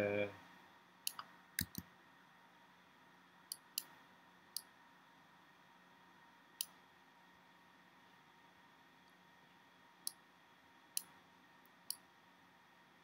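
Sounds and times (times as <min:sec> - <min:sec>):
faint room hiss: 0:00.0 - 0:13.0
computer mouse clicks: 0:01.1 - 0:01.9.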